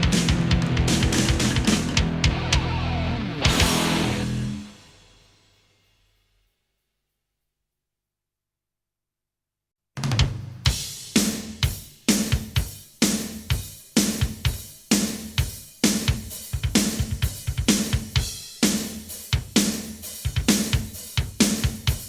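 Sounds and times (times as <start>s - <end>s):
low bass line: 0.0s - 4.6s
rock drum beat: 0.0s - 5.0s, 10.0s - 22.0s.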